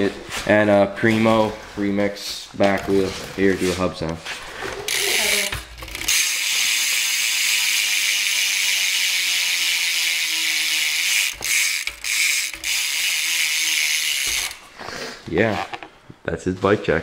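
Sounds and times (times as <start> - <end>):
bicycle hub freewheeling clicking buzz: 4.9 - 14.6.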